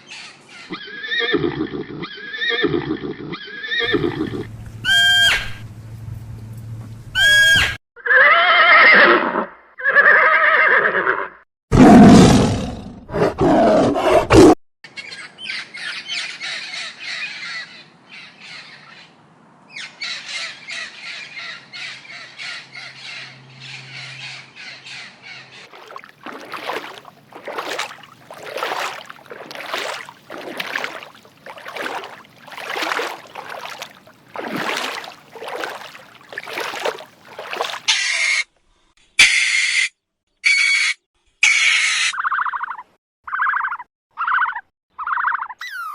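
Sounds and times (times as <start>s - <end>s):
animal calls: 40.5s - 45.9s.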